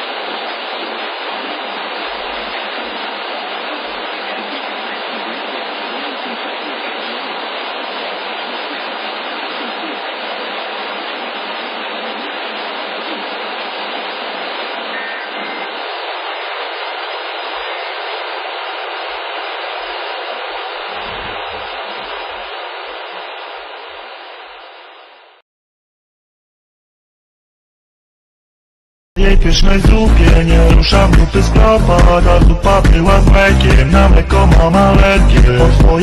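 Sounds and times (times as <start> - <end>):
radio static hiss: 0.0 - 25.4.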